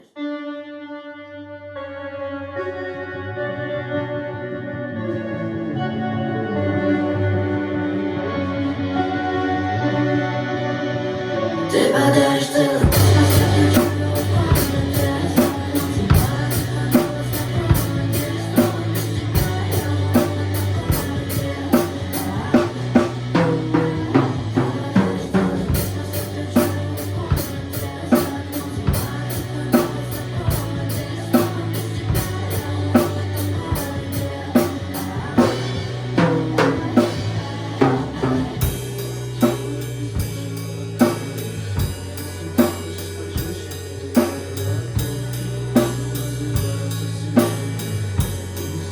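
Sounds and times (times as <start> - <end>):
bass line: 3.3 - 48.9
rock backing track: 12.4 - 48.9
drum kit playing rock beat: 12.8 - 48.9.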